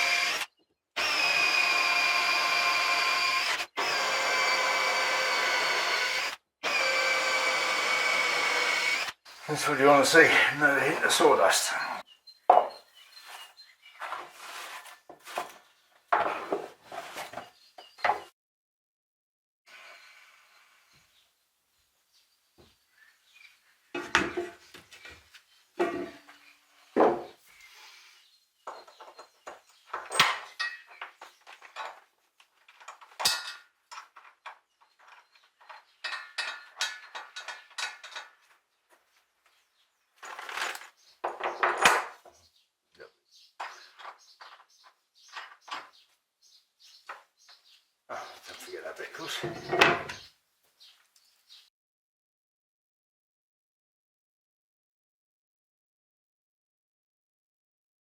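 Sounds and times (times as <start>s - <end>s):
rubbing and knocking on wood: 27.0s - 27.4s
hard objects clinking and knocking: 28.7s - 32.0s, 32.8s - 38.4s.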